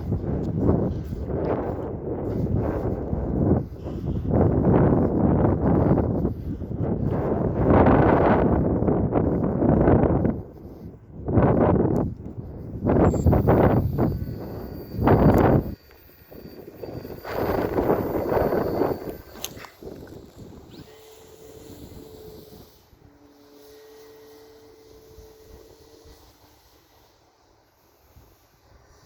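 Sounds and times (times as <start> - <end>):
wind buffeting microphone: 0.0 - 29.0.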